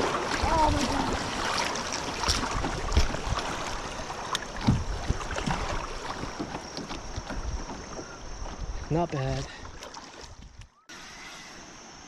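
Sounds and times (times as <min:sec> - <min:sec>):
whitewater rushing and splashing: 0:00.0 - 0:06.8
wind buffeting microphone: 0:02.2 - 0:06.4.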